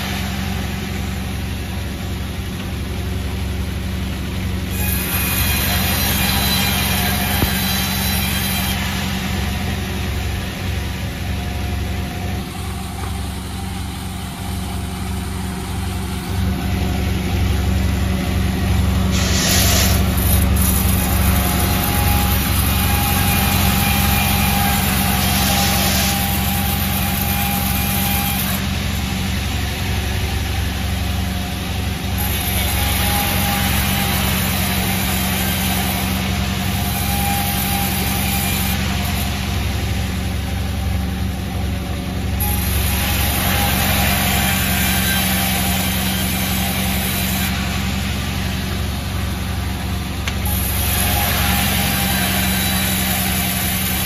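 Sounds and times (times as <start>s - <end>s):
sawmill machinery humming: 0.0s - 54.0s
hissing bursts: 19.1s - 27.7s.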